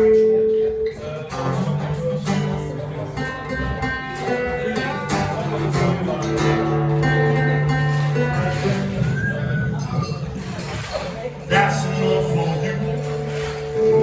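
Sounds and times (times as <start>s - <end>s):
electric guitar: 11.7s - 14.0s.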